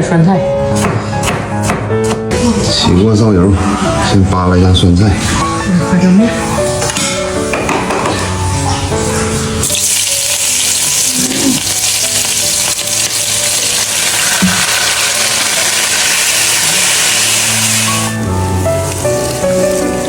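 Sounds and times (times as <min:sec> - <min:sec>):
background music: 0:00.0 - 0:20.0
cabbage sizzling in hot oil: 0:09.5 - 0:20.0.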